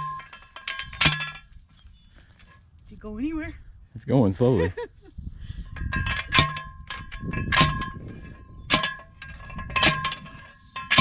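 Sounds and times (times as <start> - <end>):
metal post clanging: 0.0 - 1.8, 5.7 - 11.0.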